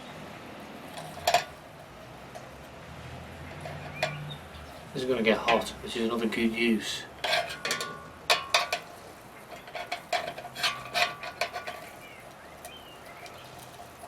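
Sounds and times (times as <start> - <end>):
metal clinks and knocks: 0.9 - 1.6, 3.5 - 4.3, 7.2 - 12.1.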